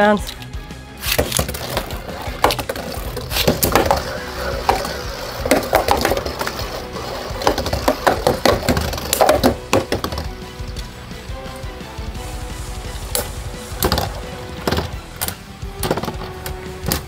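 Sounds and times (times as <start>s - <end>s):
spinning whir: 1.5s - 11.3s.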